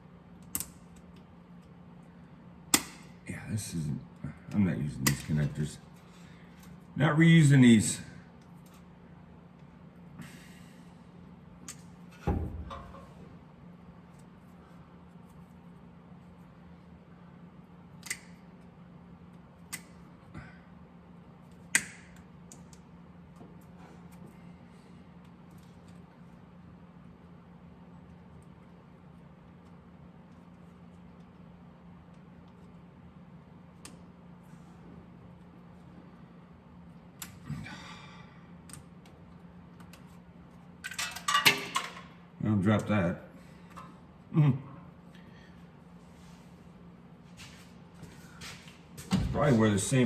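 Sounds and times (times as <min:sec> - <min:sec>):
steady low hum: 0:00.0 - 0:50.0
metal parts clattering: 0:40.8 - 0:42.0
metal tools clicking and knocking: 0:40.8 - 0:42.0.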